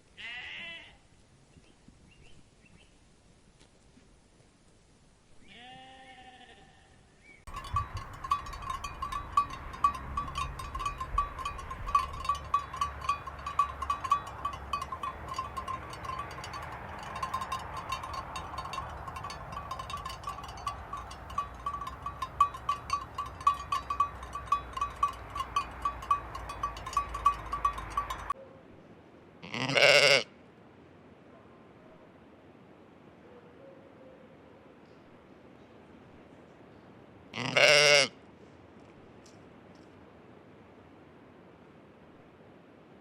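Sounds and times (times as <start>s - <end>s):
sheep bleating: 0.2s - 1.0s, 5.4s - 7.0s, 29.4s - 30.3s, 37.4s - 38.1s
pulsing high ringing tone: 7.5s - 28.4s.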